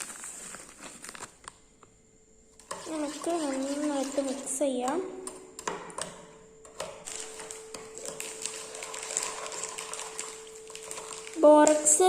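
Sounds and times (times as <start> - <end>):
faint steady hum: 0.0 - 12.0
spoon scraping a bowl: 2.6 - 4.6.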